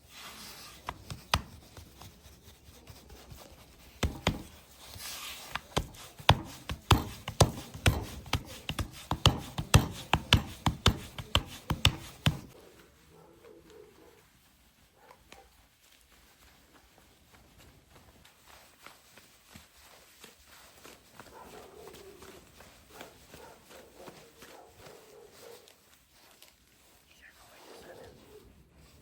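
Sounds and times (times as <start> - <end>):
sharp knocks: 4.0 - 4.6, 5.6 - 12.6.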